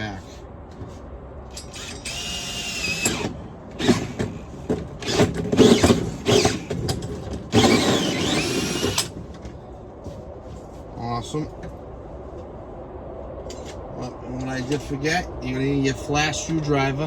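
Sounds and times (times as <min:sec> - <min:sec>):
power drill cutting plastic: 0:01.7 - 0:04.2, 0:05.0 - 0:06.7, 0:07.5 - 0:09.1.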